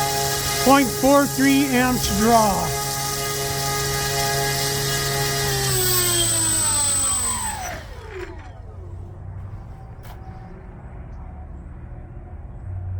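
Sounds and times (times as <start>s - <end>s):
electric motor whine: 0.0s - 9.0s.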